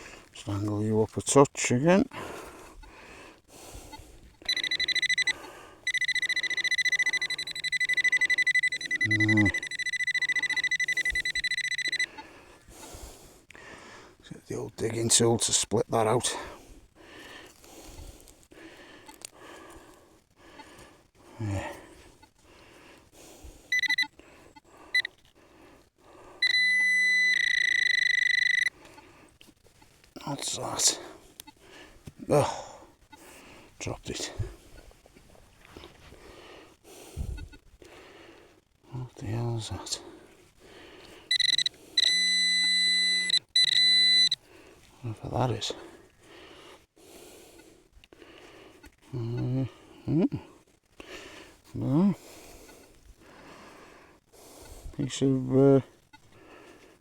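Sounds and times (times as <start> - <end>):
pinpointer rapid pulsing beep: 3.9 - 12.2, 23.7 - 24.2, 26.4 - 28.8, 41.3 - 44.4.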